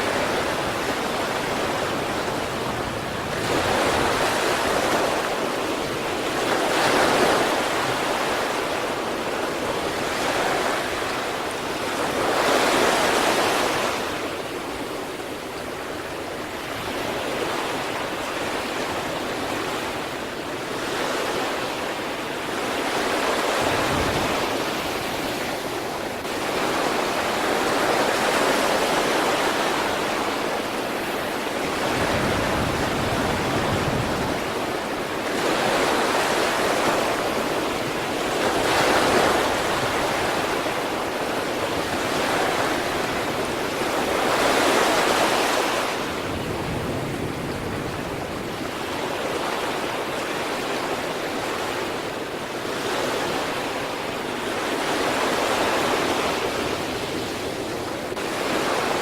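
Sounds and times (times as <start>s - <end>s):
sea waves breaking on shore: 0.0s - 59.0s.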